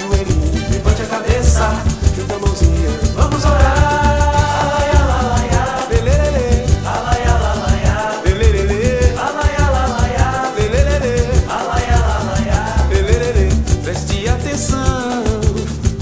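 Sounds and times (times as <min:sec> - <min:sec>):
fast percussion rhythm: 0:00.0 - 0:16.0
person singing a melody: 0:00.0 - 0:16.0.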